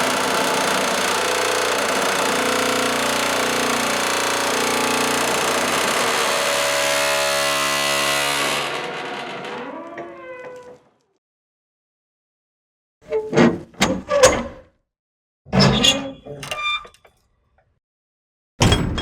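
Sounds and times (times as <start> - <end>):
metal door grinding and squealing: 0.3 - 10.8, 13.0 - 14.7, 15.5 - 17.2.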